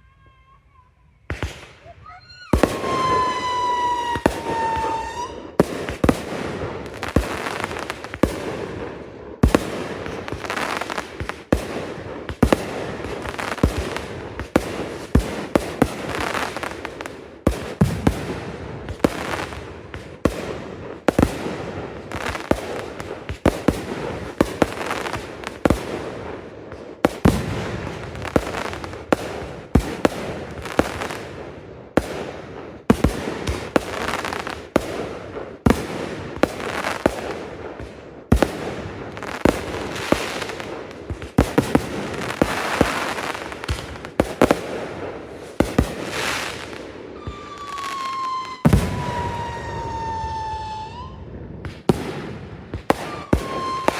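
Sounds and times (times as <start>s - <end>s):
fireworks crackling: 0.0s - 53.9s
fireworks bangs: 0.2s - 53.9s
falling firework whistle: 2.0s - 5.6s, 47.2s - 51.5s, 52.9s - 53.9s.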